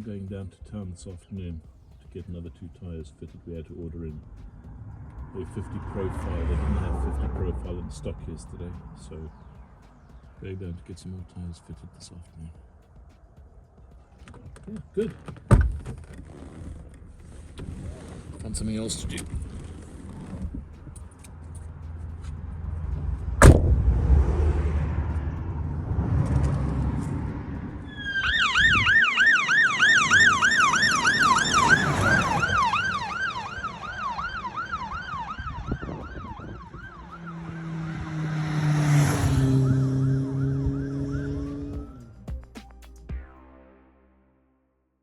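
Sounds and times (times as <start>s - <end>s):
low road rumble: 0.0s - 44.8s
emergency siren yelp: 27.8s - 42.2s.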